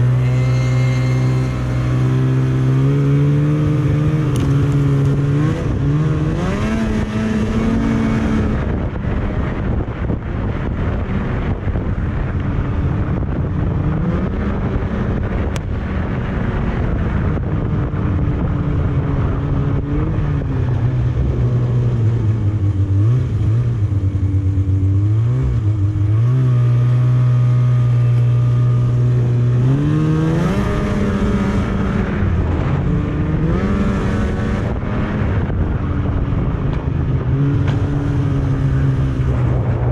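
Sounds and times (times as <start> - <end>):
snowmobile engine revving: 0.0 - 9.6, 18.3 - 39.9.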